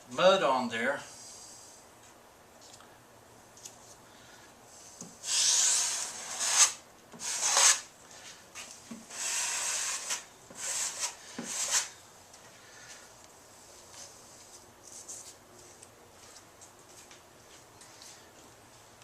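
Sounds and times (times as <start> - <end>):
taping knife scraping drywall: 5.0 - 7.9, 9.0 - 12.0.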